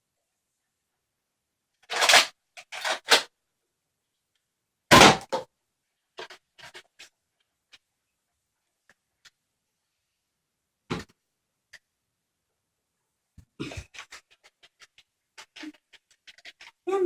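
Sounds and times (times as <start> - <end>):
loud hard thud: 4.9 - 5.4.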